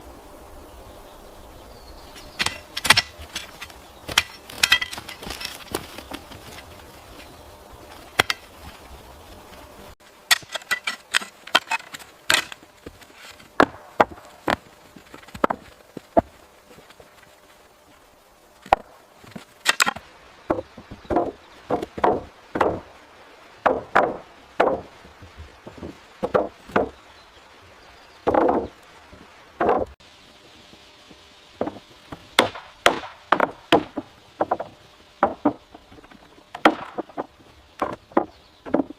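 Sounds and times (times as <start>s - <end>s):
axe chopping wood: 2.3s - 6.6s, 8.1s - 8.5s, 10.3s - 16.3s, 18.6s - 22.9s, 23.6s - 25.0s, 25.7s - 27.0s, 28.3s - 28.7s, 29.6s - 29.9s, 31.6s - 35.6s, 36.5s - 38.9s.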